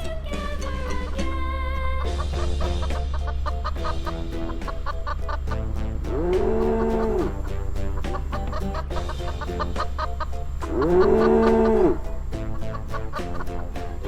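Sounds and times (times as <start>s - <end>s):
children's song music: 0.0s - 14.0s
long rising and falling animal call: 8.4s - 12.1s.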